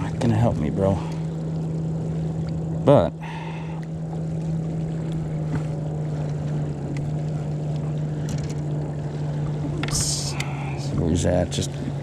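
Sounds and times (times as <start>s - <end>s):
boat motor humming: 0.0s - 12.0s.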